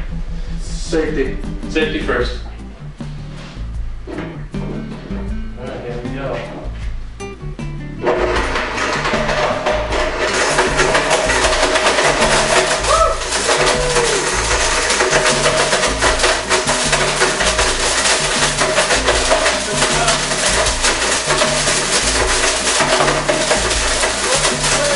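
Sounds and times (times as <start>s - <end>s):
background music with beat: 0.0s - 24.9s
ice rattling in blender jar: 8.0s - 24.9s
blender running: 8.5s - 24.9s.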